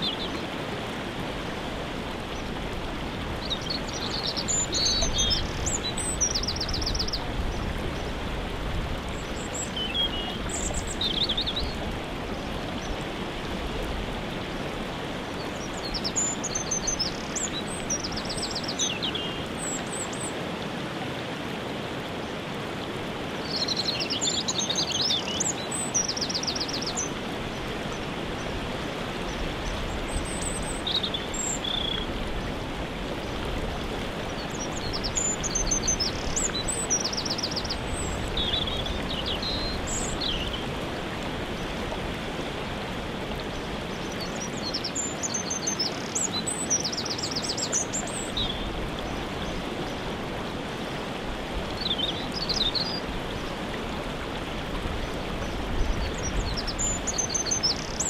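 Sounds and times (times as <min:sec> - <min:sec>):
waterfall rushing: 0:00.0 - 0:58.0
songbirds chirping and trilling: 0:03.3 - 0:13.0, 0:29.2 - 0:32.6, 0:34.2 - 0:40.8, 0:43.3 - 0:50.1, 0:55.0 - 0:58.0.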